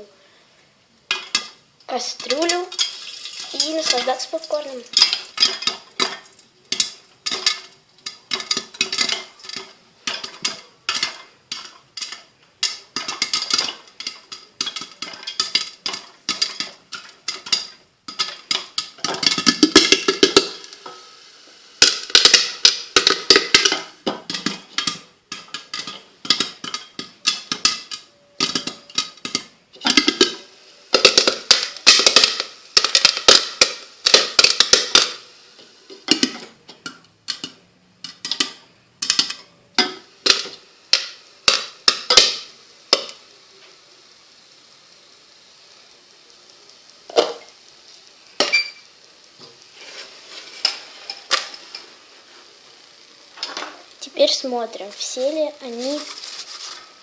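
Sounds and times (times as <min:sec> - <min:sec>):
popcorn popping in a saucepan: 0:01.0 - 0:57.0.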